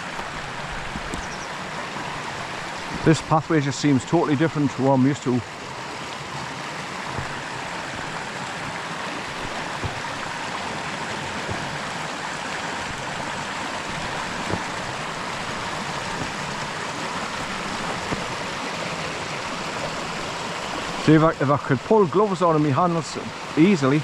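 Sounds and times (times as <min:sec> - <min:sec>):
water rushing over boulders: 0:00.0 - 0:24.0
soft knocks: 0:07.0 - 0:08.3, 0:09.3 - 0:10.4, 0:11.3 - 0:11.8, 0:12.8 - 0:16.8, 0:17.4 - 0:18.5.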